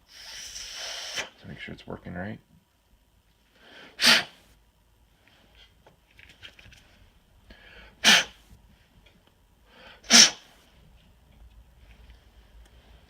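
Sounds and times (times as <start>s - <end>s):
sharp puffs of breath: 0.0s - 1.4s, 3.5s - 4.5s, 7.5s - 8.5s, 9.7s - 10.7s.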